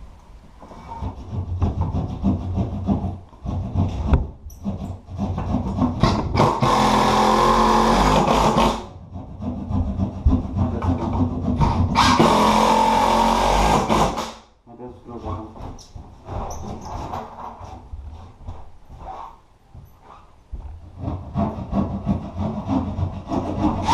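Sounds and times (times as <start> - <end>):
scraping and knocking on wood: 0.6 - 12.6, 15.4 - 23.9
power tool running: 6.4 - 8.8, 12.0 - 14.2.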